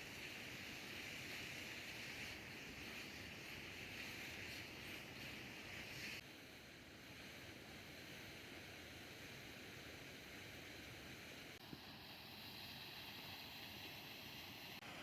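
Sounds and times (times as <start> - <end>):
running water rushing: 0.0 - 6.2.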